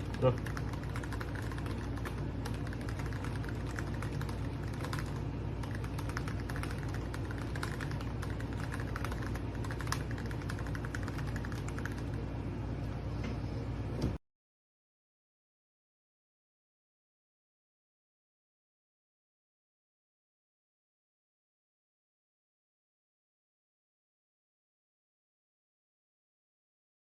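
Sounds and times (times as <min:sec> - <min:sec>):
typing on mechanical keyboard: 0:00.0 - 0:12.2
steady low hum: 0:00.0 - 0:14.2.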